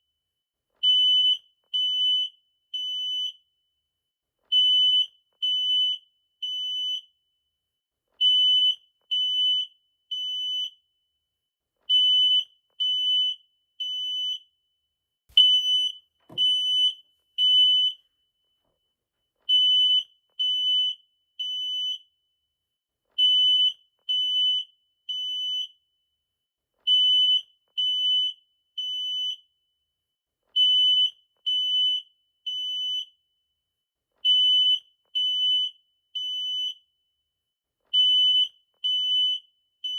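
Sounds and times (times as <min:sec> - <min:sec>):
smoke detector alarm beeping: 0:04.5 - 0:07.2, 0:15.3 - 0:18.1, 0:30.6 - 0:33.2, 0:34.2 - 0:37.0.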